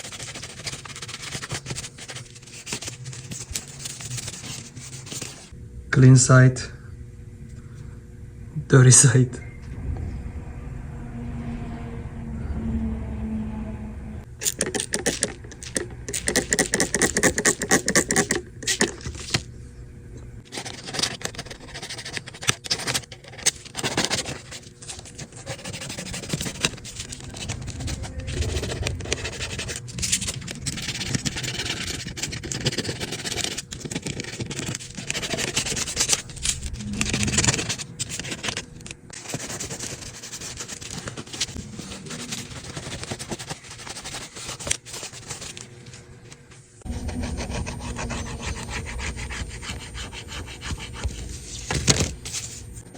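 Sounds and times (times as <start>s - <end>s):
scrubbing and scraping a case: 0.0s - 5.5s, 14.4s - 19.4s, 20.5s - 45.6s, 47.0s - 52.6s.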